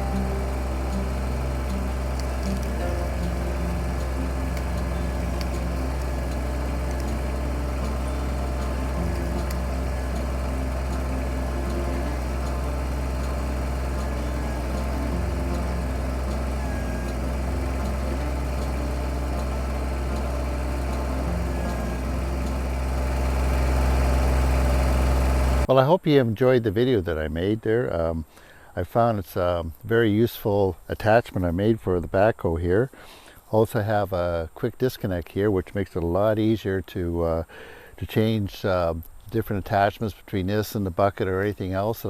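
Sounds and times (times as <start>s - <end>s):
diesel tractor engine running: 0.0s - 25.7s.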